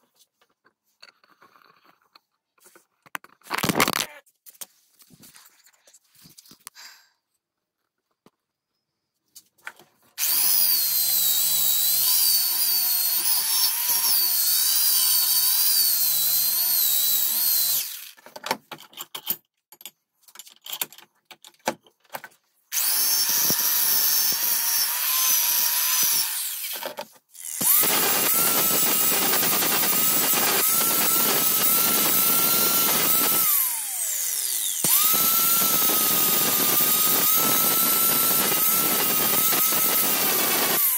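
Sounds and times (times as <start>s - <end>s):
power tool high whine: 10.2s - 18.0s, 22.8s - 26.8s, 27.4s - 40.9s.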